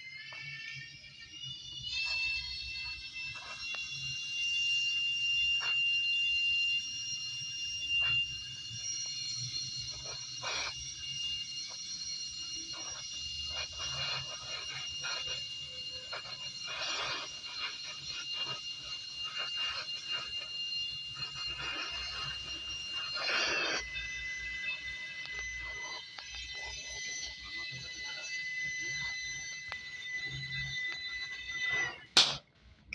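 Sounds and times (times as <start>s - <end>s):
gas torch whistling: 0.0s - 32.9s
hiss and crackle bursts: 9.8s - 10.8s, 12.7s - 15.4s, 16.0s - 24.0s.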